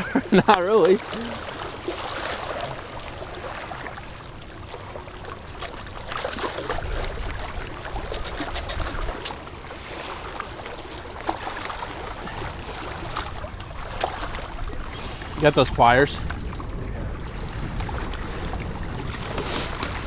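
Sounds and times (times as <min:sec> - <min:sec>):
wind buffeting microphone: 0:05.2 - 0:20.0.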